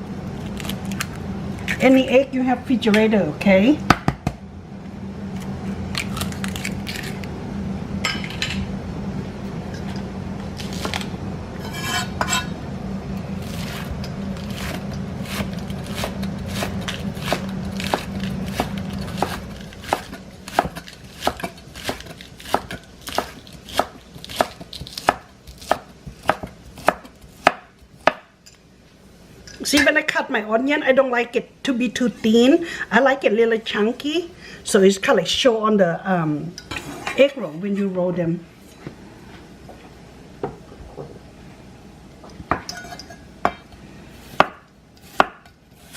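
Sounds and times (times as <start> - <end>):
steady low hum: 0.0 - 45.9
knife chopping onion on board: 14.6 - 28.3, 44.2 - 45.9.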